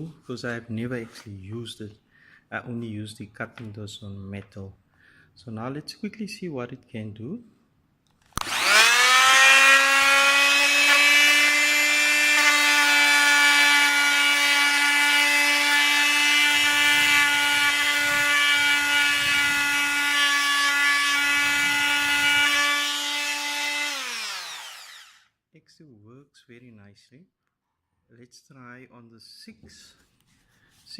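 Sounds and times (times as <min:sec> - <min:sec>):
multi-tool high buzz: 0:08.4 - 0:25.3.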